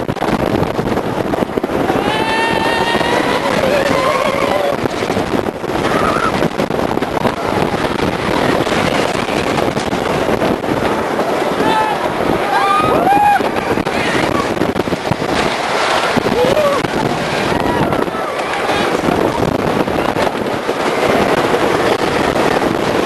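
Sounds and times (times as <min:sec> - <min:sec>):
roller coaster rattling: 0:00.0 - 0:23.0
rushing wind: 0:00.0 - 0:23.0
riders yelling: 0:01.8 - 0:04.8, 0:11.4 - 0:14.5, 0:15.7 - 0:19.4.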